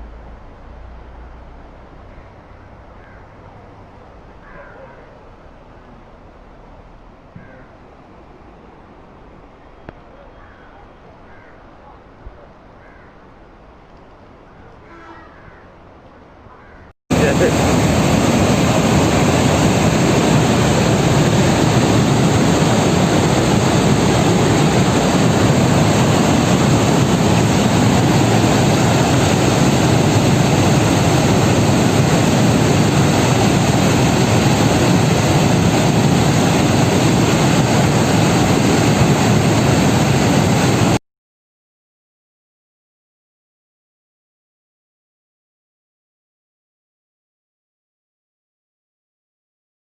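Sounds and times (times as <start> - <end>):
river rushing in flood: 17.1 - 41.0.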